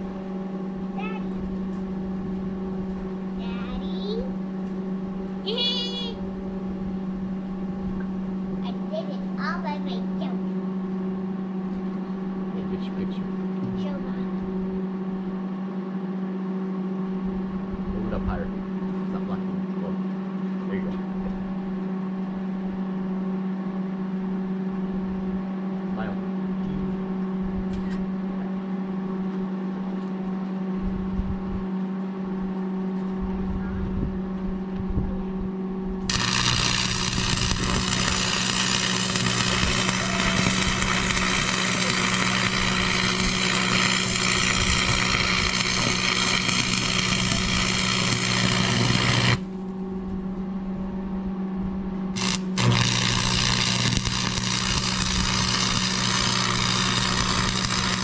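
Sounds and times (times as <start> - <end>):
low machine hum: 0.0 - 58.0
plasma cutter hissing: 36.1 - 49.5, 52.2 - 58.0.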